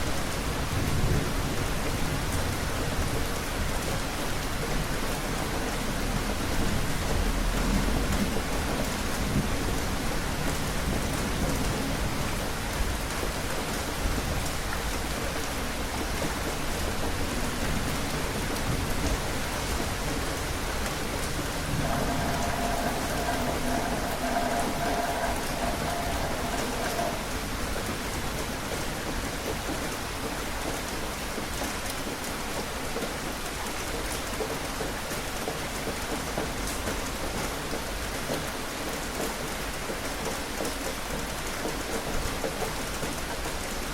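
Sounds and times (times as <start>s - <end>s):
steady rain: 0.0s - 43.9s
faint steady hum: 21.6s - 27.6s
low rumble: 21.6s - 27.6s.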